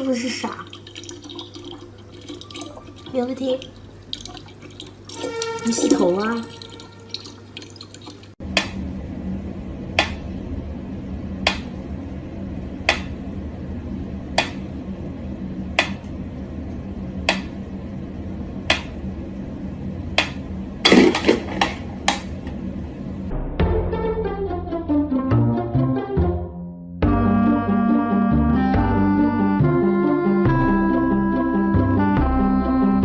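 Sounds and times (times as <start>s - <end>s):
steady low hum: 0.0s - 23.6s.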